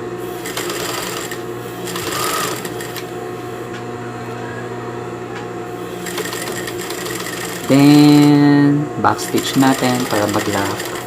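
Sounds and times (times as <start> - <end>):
sewing machine running: 0.0 - 3.2, 5.8 - 11.0.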